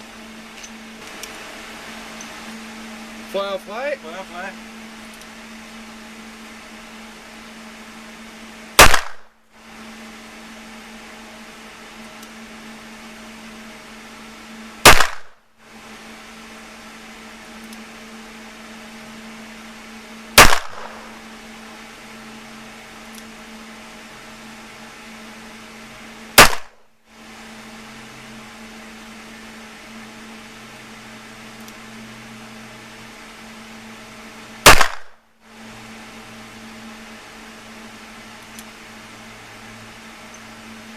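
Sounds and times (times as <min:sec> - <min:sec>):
steady low hum: 0:00.0 - 0:40.9
pistol shots: 0:08.8 - 0:09.3, 0:14.8 - 0:15.4, 0:20.4 - 0:21.2, 0:26.4 - 0:26.8, 0:34.6 - 0:35.2.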